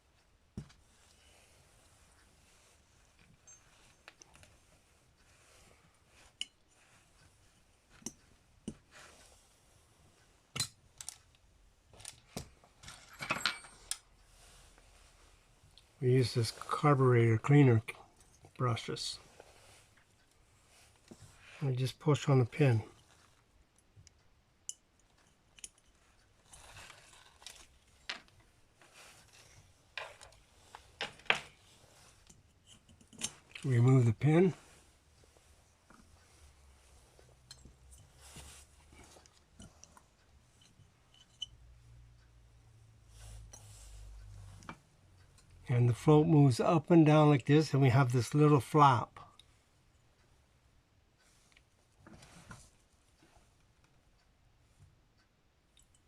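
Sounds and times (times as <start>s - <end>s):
metal parts clicking and tapping: 11.9s - 14.1s, 32.2s - 33.7s, 40.6s - 41.5s.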